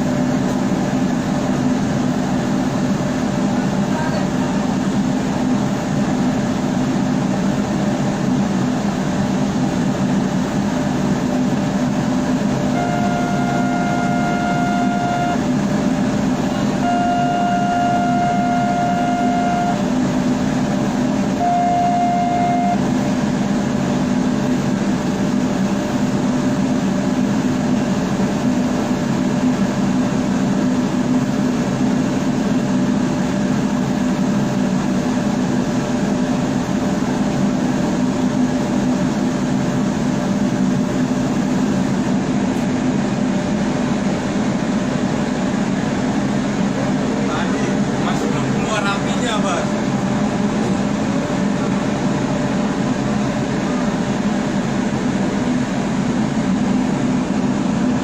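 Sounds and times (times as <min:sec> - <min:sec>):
steady loud rumble: 0:00.0 - 0:58.0
horn blasts: 0:12.7 - 0:15.6, 0:16.6 - 0:20.0, 0:21.4 - 0:22.9.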